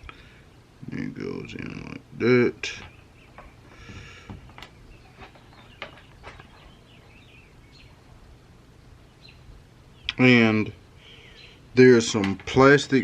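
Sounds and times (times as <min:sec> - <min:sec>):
faint bird chirps: 0:02.6 - 0:11.7.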